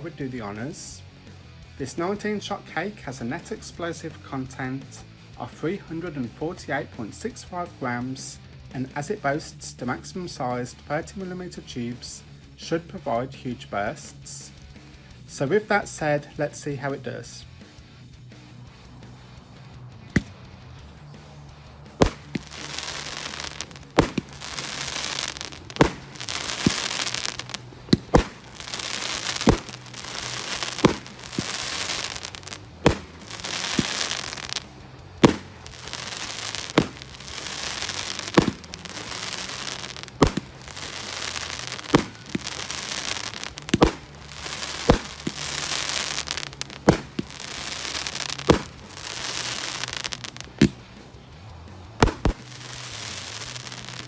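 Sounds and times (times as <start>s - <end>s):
firework shots banging: 20.1s - 20.5s, 21.9s - 50.9s, 52.0s - 54.0s
firework bursts hissing and fizzing: 21.8s - 50.7s, 52.0s - 54.0s.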